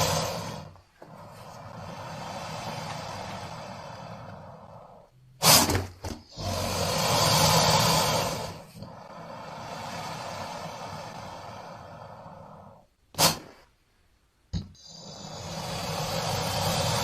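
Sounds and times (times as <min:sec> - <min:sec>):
stuttering monster vocal burst: 0:00.0 - 0:00.7, 0:15.0 - 0:17.0
breathy monster hiss: 0:00.0 - 0:13.8, 0:14.8 - 0:17.0
raspy monster hiss: 0:00.0 - 0:13.8, 0:14.8 - 0:17.0.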